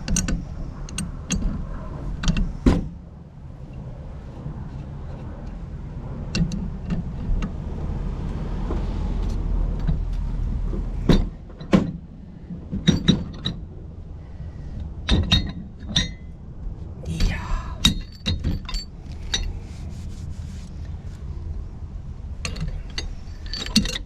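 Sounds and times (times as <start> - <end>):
low steady rumble: 0.0 - 24.0
tools clinking on metal fittings: 22.5 - 24.0.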